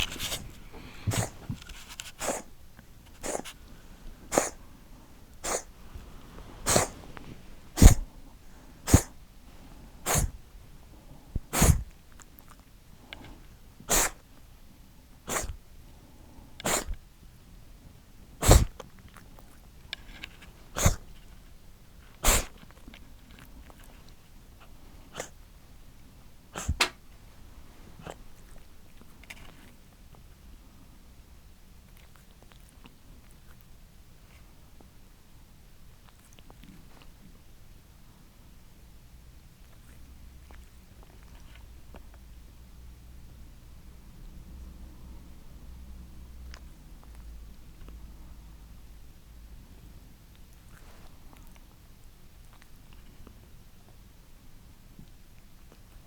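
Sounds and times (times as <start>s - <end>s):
cat reverse-sneezing snorts: 0.0s - 1.5s, 2.1s - 2.5s, 3.2s - 3.6s, 4.3s - 4.6s, 5.4s - 8.2s, 8.8s - 9.2s, 10.0s - 10.4s, 11.5s - 11.9s, 13.9s - 14.2s, 15.3s - 15.6s, 16.6s - 17.0s, 18.4s - 18.8s, 20.7s - 21.1s, 22.2s - 22.6s, 25.1s - 25.4s, 26.6s - 26.9s.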